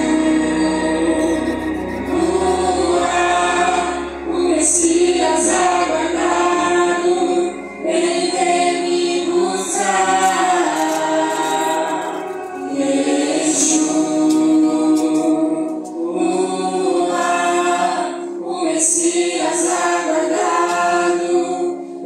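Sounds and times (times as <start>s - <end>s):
held keyboard tone: 0.0s - 15.4s
group singing a hymn: 0.0s - 22.0s.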